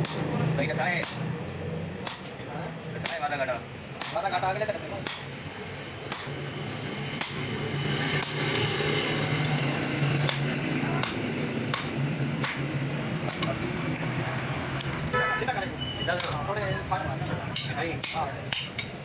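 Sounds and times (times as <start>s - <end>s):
hammer striking chisel on metal: 0.0s - 13.6s, 17.5s - 19.0s.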